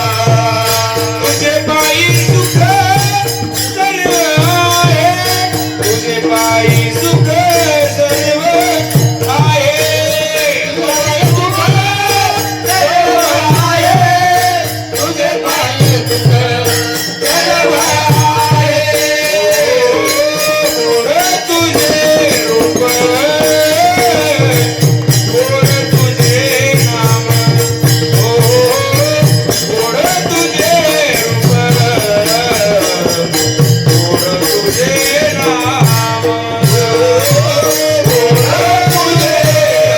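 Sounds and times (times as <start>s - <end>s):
man singing: 0.0s - 39.9s
small hand cymbals: 0.0s - 39.9s.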